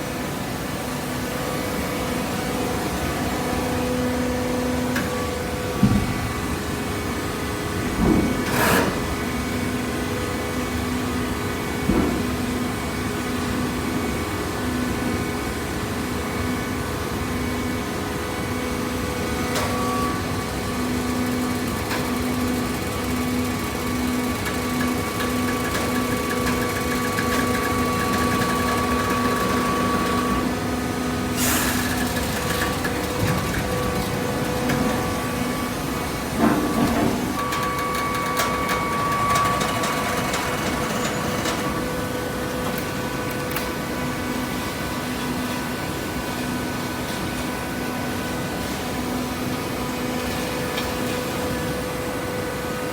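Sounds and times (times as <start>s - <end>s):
hydraulic motor humming: 19.6s - 43.6s.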